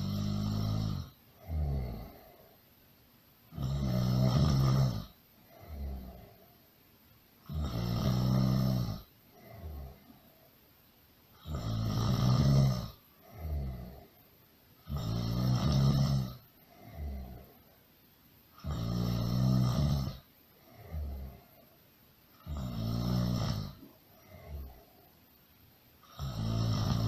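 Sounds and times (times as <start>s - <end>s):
loud snoring: 0.0s - 2.5s, 3.5s - 6.4s, 7.4s - 10.1s, 11.4s - 14.2s, 14.8s - 17.6s, 18.6s - 21.6s, 22.4s - 25.0s, 26.0s - 27.0s.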